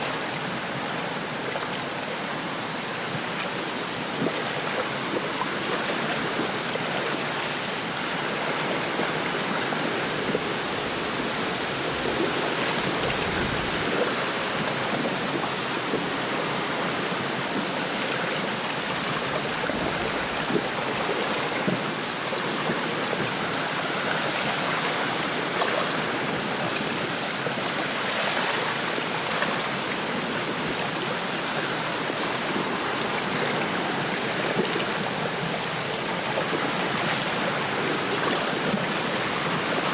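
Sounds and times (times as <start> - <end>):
small waves lapping: 0.0 - 39.9
wind rushing through reeds: 7.8 - 16.8.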